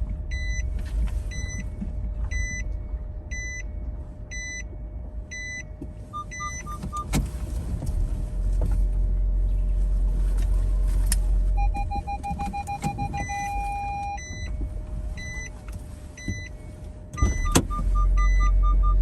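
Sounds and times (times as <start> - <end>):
engine and tyre rumble: 0.0 - 19.0
parking sensor beeping rapidly: 0.3 - 0.7, 1.3 - 1.7, 2.3 - 2.7, 3.3 - 3.7, 4.3 - 4.7, 5.3 - 7.3, 11.6 - 14.6, 15.2 - 15.6, 16.2 - 19.0
reverse gear warning beeps: 0.3 - 7.3, 11.5 - 19.0.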